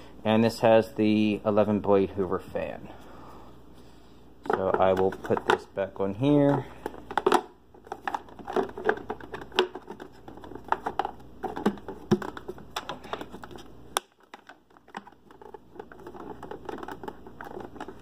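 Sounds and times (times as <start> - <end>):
vacuum base plate handling: 4.4 - 18.0.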